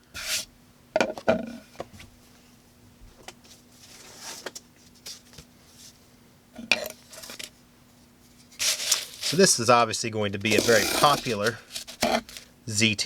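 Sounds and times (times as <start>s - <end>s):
faint steady hum: 0.0s - 13.0s
soft rustles of handling: 1.8s - 6.1s, 7.0s - 9.7s, 10.3s - 12.6s.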